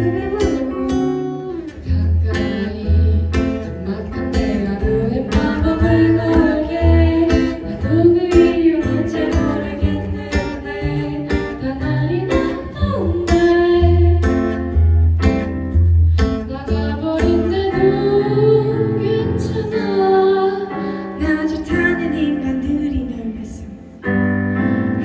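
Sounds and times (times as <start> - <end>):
person singing: 0.0 - 14.6, 16.4 - 23.6.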